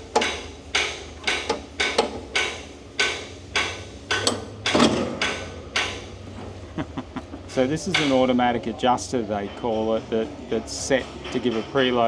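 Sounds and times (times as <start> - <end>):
metal-on-metal knocks: 0.0 - 6.9, 7.5 - 8.5.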